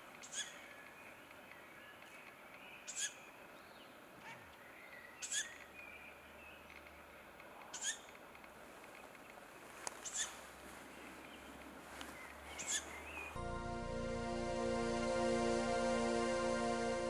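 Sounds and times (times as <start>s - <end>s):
faint songbird notes: 0.2s - 8.2s, 8.9s - 13.4s
owlet rasping begging calls: 10.0s - 13.4s.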